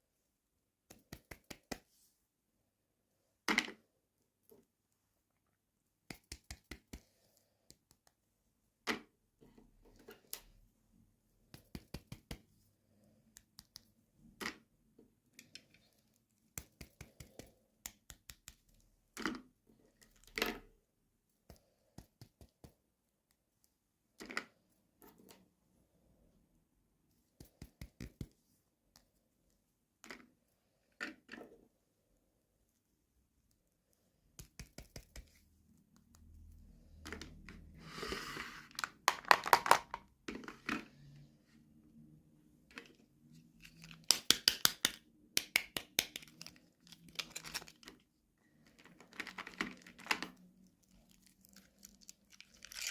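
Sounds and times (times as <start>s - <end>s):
packaging rustling: 50.8s - 52.9s.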